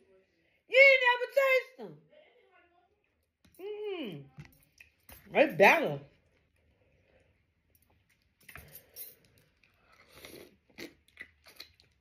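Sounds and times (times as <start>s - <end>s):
person chewing oysters: 7.6s - 12.0s.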